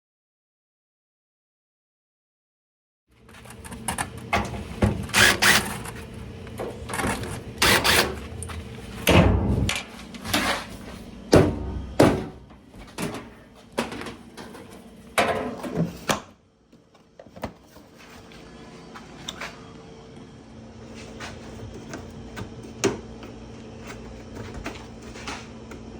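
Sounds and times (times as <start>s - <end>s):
steady low hum: 3.3s - 16.1s.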